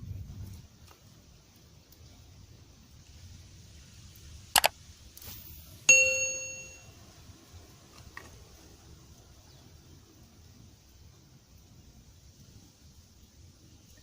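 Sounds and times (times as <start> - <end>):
bright metallic ding: 5.9 - 6.9.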